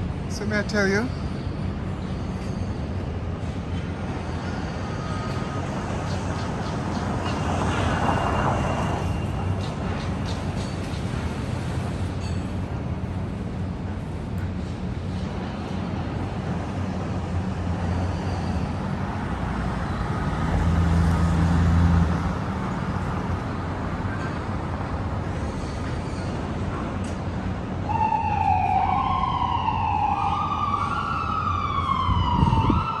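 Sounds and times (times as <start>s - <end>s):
city traffic drone: 0.0s - 33.0s
emergency siren wailing: 27.8s - 33.0s.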